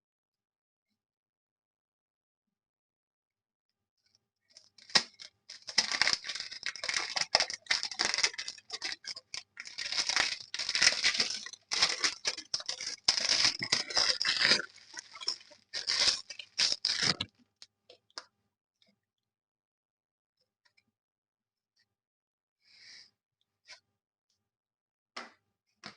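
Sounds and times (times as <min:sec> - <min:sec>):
packaging crinkling and tearing: 0:04.6 - 0:17.3.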